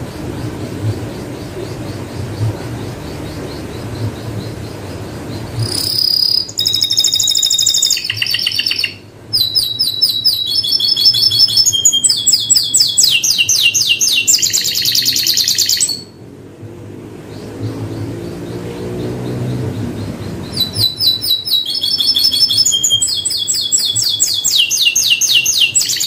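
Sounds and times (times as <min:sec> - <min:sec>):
canary singing trills: 0:00.0 - 0:16.3, 0:17.1 - 0:26.0.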